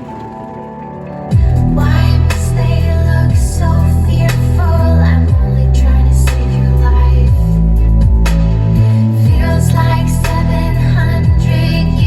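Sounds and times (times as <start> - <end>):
electronic music with female vocals: 0.0 - 12.0.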